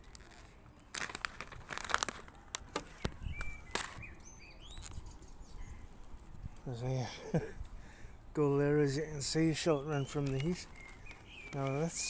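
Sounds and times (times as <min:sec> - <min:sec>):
packet crinkling: 0:00.0 - 0:04.0, 0:10.0 - 0:12.0
high bird chirps: 0:03.0 - 0:05.9, 0:09.4 - 0:12.0.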